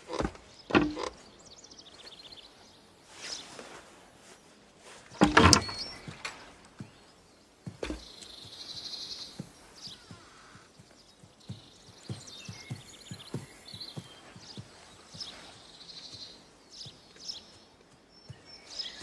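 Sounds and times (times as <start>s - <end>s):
sharp thumps or knocks: 0.0s - 1.2s, 5.2s - 6.9s, 7.7s - 8.6s
small birds chirping: 0.0s - 19.0s.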